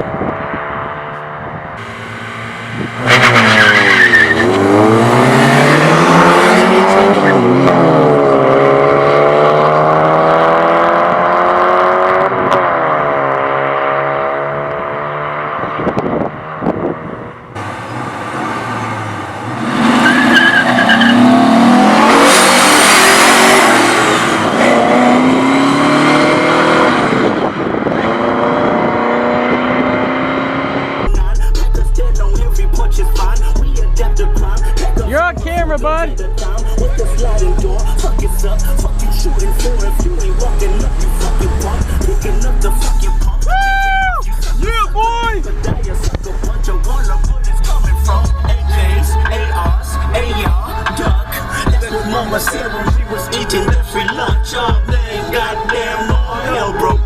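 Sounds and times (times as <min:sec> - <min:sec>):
car engine revving hard: 0:00.1 - 0:31.2, 0:36.3 - 0:43.4
tyres squealing and skidding: 0:01.8 - 0:08.0, 0:17.3 - 0:26.6.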